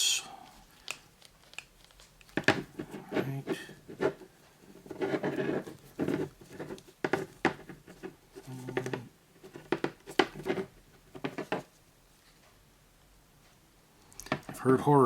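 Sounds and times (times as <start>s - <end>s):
plastic packaging rustling: 0.5s - 7.4s.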